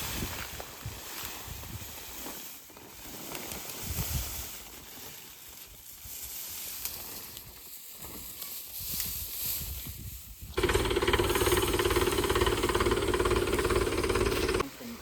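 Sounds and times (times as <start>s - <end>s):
wind gusting on microphone: 9.0s - 12.5s.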